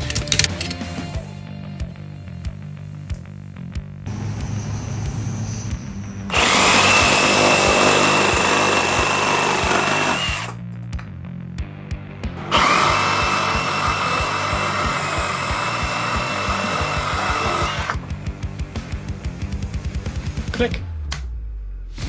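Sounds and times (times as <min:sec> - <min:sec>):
reciprocating saw cutting wood: 0:04.2 - 0:10.6, 0:12.4 - 0:18.0.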